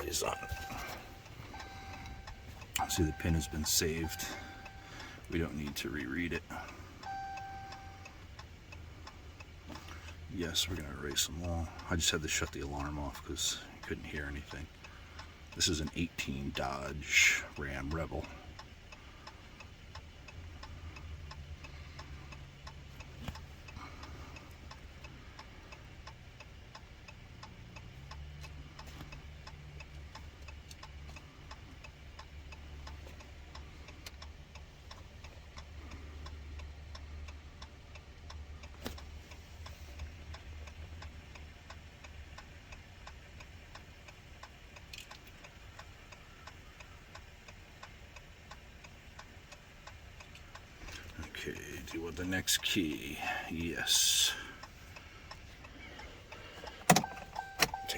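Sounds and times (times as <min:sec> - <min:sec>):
low hum: 0:00.0 - 0:08.2.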